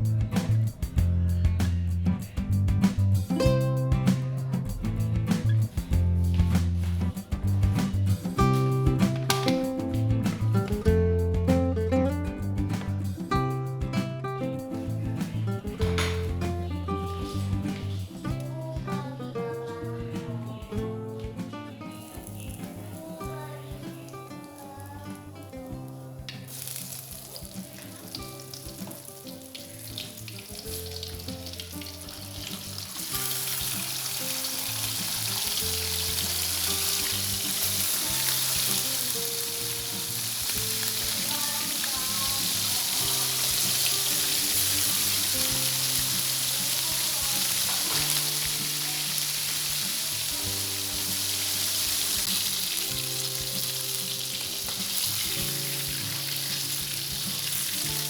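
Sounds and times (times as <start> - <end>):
background music melody: 3.2 - 58.0
fish sizzling in hot oil: 25.8 - 58.0.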